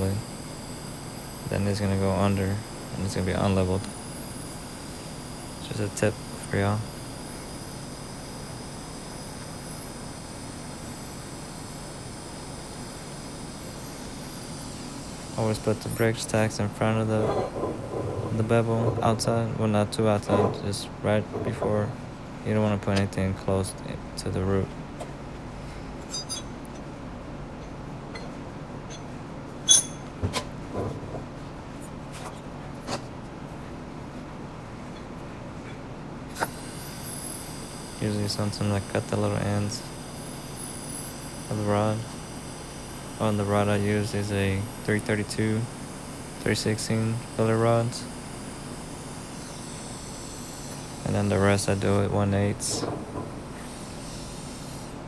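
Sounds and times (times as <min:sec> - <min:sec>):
low shop hum: 0:00.0 - 0:55.0
faint high steady tones: 0:29.7 - 0:30.2
metallic clinks and taps: 0:29.7 - 0:30.2.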